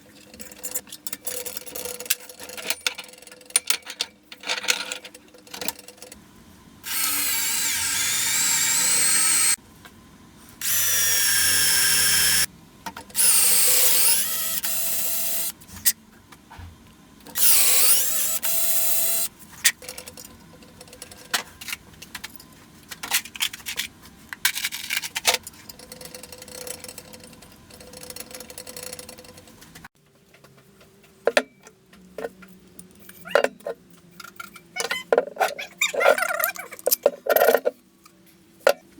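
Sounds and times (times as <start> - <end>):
power tool whining: 6.8 - 9.6, 10.6 - 12.5.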